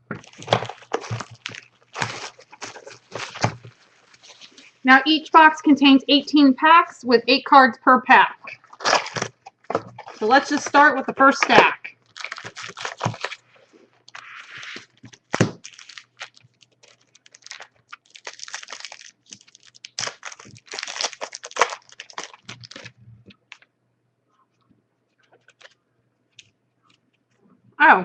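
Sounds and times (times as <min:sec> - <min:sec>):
card pack wrapper crinkling: 0:00.1 - 0:04.7, 0:08.5 - 0:10.8, 0:12.0 - 0:23.6, 0:25.3 - 0:25.8.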